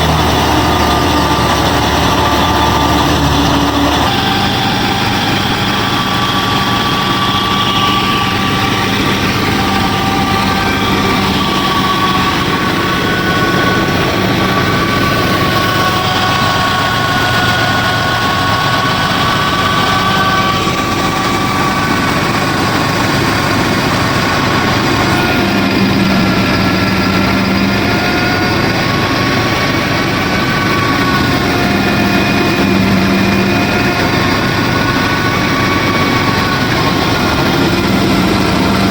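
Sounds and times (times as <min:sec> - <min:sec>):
small motors whining and whirring: 0:00.0 - 0:38.9.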